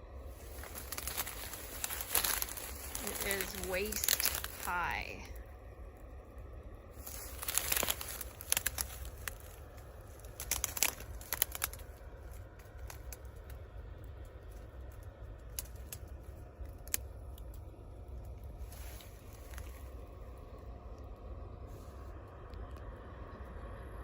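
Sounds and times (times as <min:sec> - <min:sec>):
dry wheat stalks rustling: 0:00.2 - 0:05.5, 0:06.8 - 0:13.6, 0:14.4 - 0:20.6.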